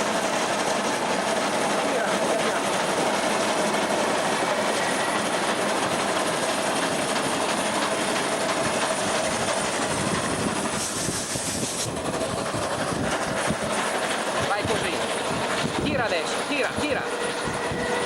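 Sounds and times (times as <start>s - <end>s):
train carriages rolling on track: 0.0s - 18.0s
brief high hiss: 10.7s - 12.0s.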